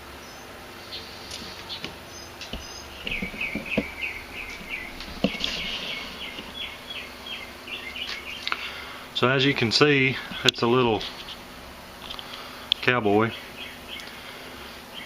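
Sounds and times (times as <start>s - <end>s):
steady background noise: 0.0s - 15.0s
small bird chirping: 0.1s - 8.7s, 12.0s - 14.2s
sharp knocks and clicks: 1.8s - 6.6s.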